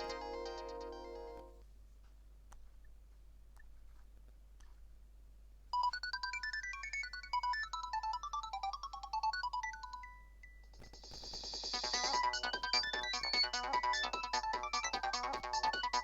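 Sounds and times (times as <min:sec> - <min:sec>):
electronic ringtone melody: 0:11.5 - 0:16.0.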